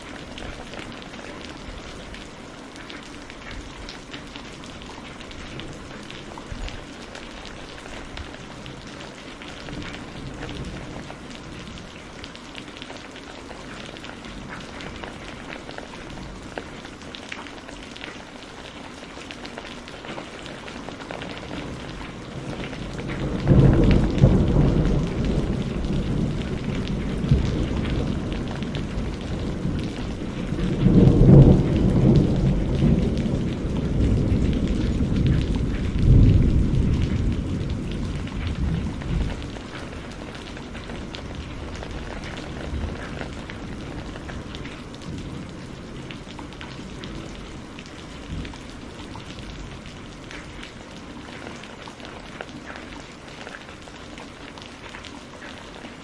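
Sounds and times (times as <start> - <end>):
steady rain: 0.0 - 56.0
rolling thunder: 21.6 - 46.0.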